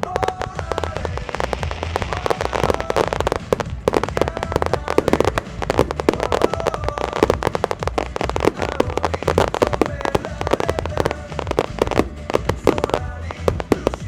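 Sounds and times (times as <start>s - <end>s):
fireworks bursts and crackling: 0.0s - 14.0s.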